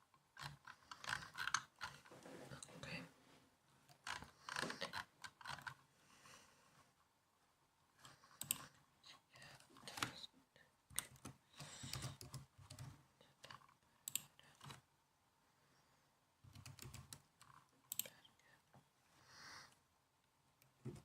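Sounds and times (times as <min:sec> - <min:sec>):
laptop keyboard typing: 0:00.4 - 0:02.0, 0:10.9 - 0:14.8, 0:16.4 - 0:18.1, 0:20.7 - 0:21.0.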